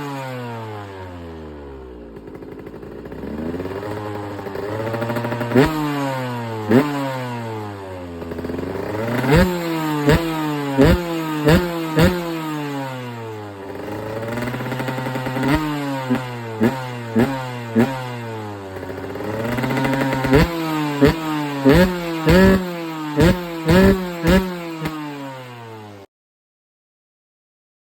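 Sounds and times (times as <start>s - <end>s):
two-stroke engine revving: 0.0s - 26.1s
sharp throttle blips: 8.3s - 12.7s, 18.8s - 25.5s.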